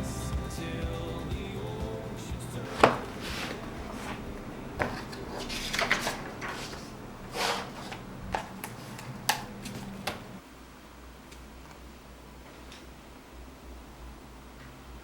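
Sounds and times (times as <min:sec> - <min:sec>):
low steady hum: 0:00.0 - 0:15.0
dishes and utensils clattering: 0:04.8 - 0:09.9.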